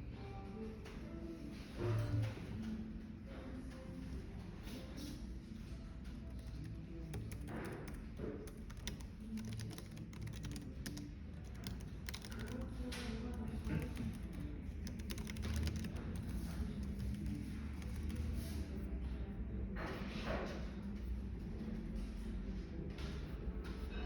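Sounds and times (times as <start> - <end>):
cafe background murmur: 0.0 - 24.0
keyboard typing: 3.7 - 18.9.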